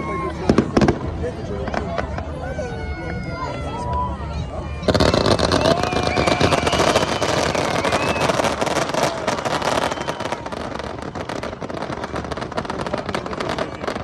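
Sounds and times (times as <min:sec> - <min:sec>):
fireworks crackling: 0:04.8 - 0:14.0.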